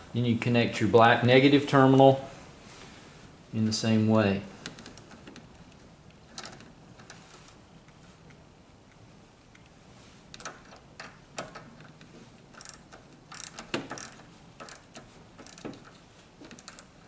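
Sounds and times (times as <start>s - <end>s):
ratchet clicking: 10.4s - 17.0s.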